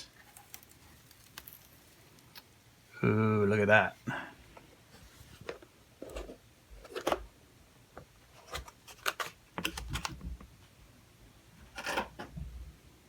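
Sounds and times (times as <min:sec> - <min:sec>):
packaging rustling: 0:00.0 - 0:02.5.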